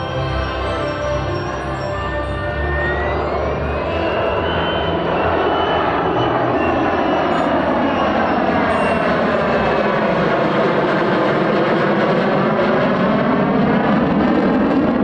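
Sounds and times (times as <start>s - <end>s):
jet aircraft flying past: 0.0s - 15.0s.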